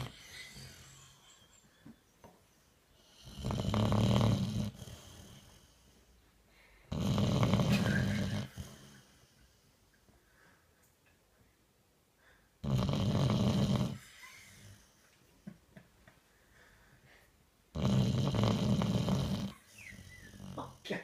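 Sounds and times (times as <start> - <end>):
dog snoring: 0.0 - 1.4, 3.0 - 6.0, 6.9 - 9.3, 12.6 - 14.9, 17.7 - 21.0.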